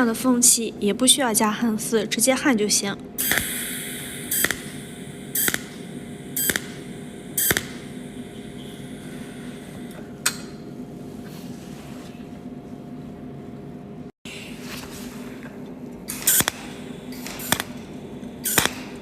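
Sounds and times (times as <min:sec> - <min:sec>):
steady low hum: 0:00.0 - 0:19.0
spot welder zapping: 0:03.2 - 0:10.5, 0:16.1 - 0:19.0.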